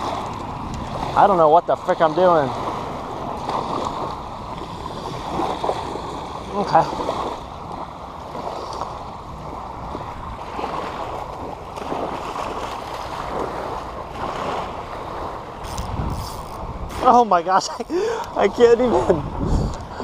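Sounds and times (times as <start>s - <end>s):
shallow water washing: 0.0s - 20.0s
wind noise on microphone: 13.2s - 18.0s, 18.8s - 20.0s.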